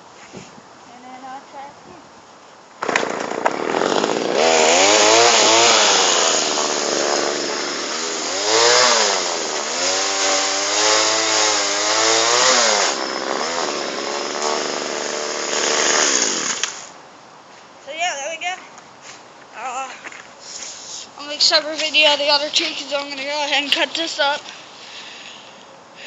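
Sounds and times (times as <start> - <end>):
chainsaw revving: 2.8 - 16.9.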